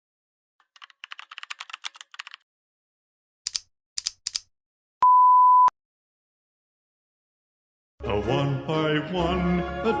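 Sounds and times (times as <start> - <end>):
loud high beep: 5.0 - 5.7.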